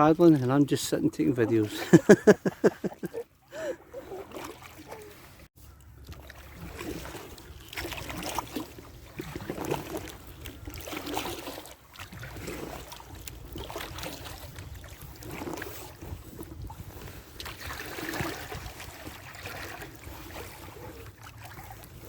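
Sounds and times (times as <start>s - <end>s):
paddle splashing in water: 0.0s - 22.0s
wind rumble on microphone: 12.1s - 19.3s.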